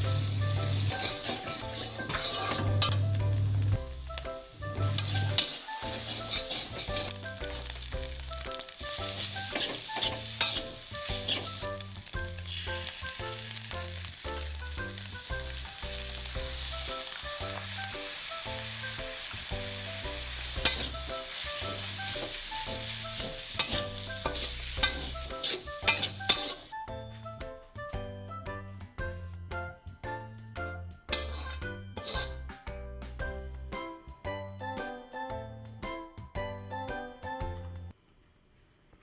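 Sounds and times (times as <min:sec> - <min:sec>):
food sizzling in oil: 0:00.0 - 0:26.8, 0:31.1 - 0:32.4
utensil stirring in pan: 0:00.0 - 0:26.8, 0:31.1 - 0:32.4
soft background music: 0:00.0 - 0:38.0.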